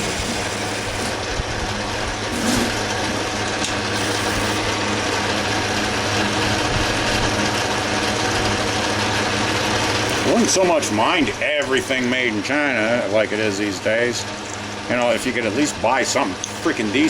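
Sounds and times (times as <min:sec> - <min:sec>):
lathe cutting hiss: 0:00.0 - 0:01.2, 0:02.2 - 0:02.9, 0:03.8 - 0:04.8
lathe motor hum: 0:00.0 - 0:17.0.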